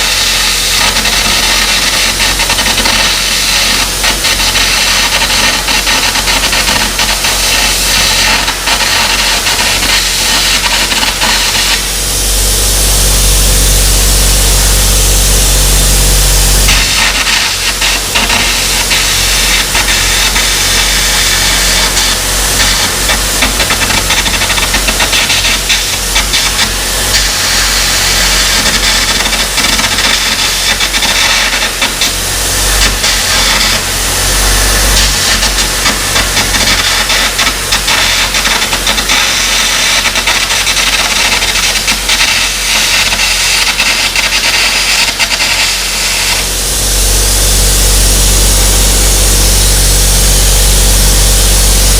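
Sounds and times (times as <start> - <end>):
arc gouging crackle: 0.0 - 51.9
compressed air jet hissing: 0.0 - 51.9
low hum: 10.7 - 20.9, 46.0 - 51.9.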